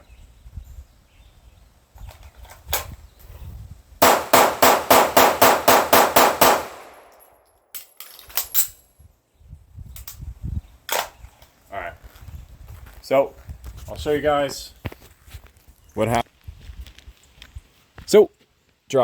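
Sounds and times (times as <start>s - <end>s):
pistol shots with echo: 4.0s - 7.3s
pistol reloading clicks: 4.0s - 8.8s.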